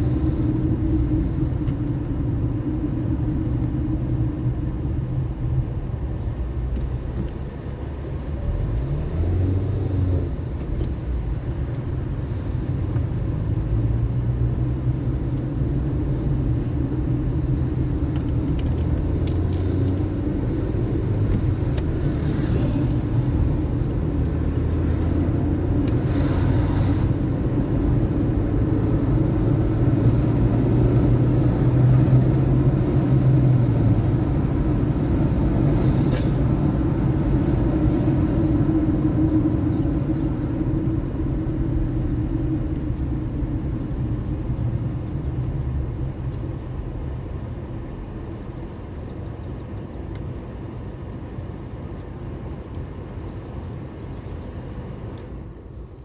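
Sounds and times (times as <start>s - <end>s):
car engine and road rumble: 0.0s - 56.0s.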